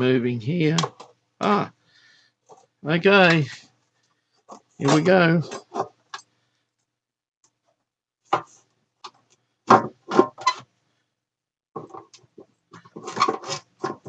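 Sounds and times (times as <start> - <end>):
knocks clicks and scrapes on plastic cover: 3.3 - 6.3, 8.2 - 10.7, 11.8 - 14.0.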